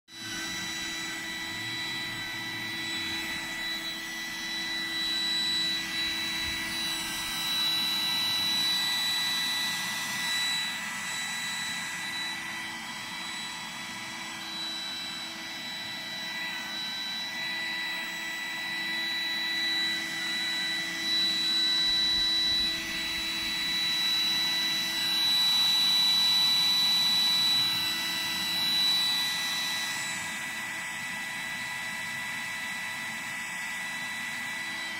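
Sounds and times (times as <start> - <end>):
high-pitched motor whine: 0.1 - 34.9
vacuum brushing noise: 0.2 - 25.1.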